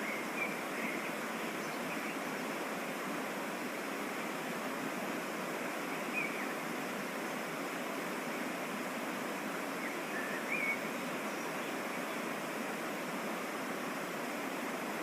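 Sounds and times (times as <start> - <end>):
waterfall and stream rushing: 0.0 - 15.0.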